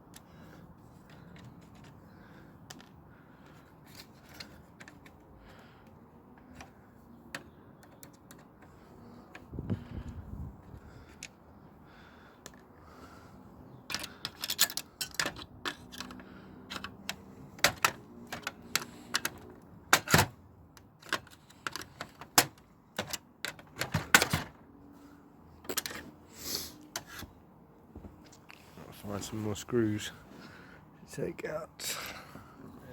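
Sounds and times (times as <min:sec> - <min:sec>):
plastic printer parts clattering: 0:13.9 - 0:24.6.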